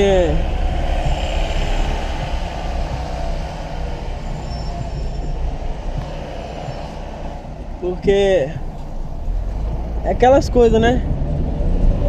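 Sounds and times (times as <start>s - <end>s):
car engine and road rumble: 0.0s - 12.0s.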